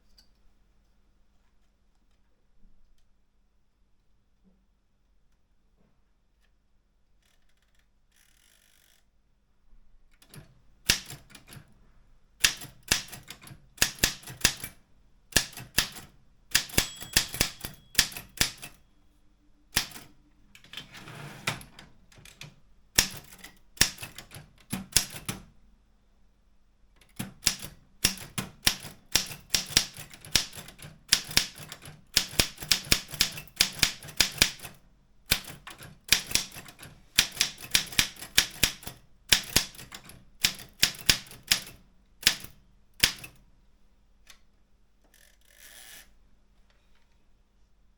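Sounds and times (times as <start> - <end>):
typewriter keystroke clicks: 10.2 - 11.7, 12.4 - 18.8, 19.8 - 20.9, 21.5 - 25.5, 27.0 - 43.4.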